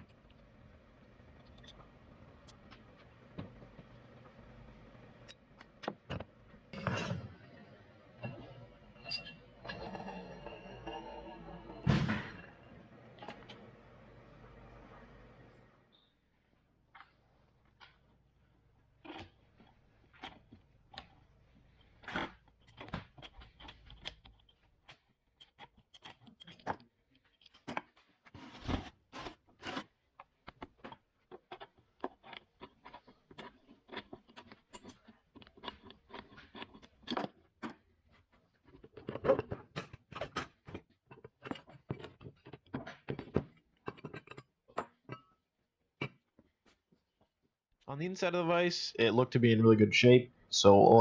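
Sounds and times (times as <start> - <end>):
metal tools clinking and scraping: 6.8 - 13.6.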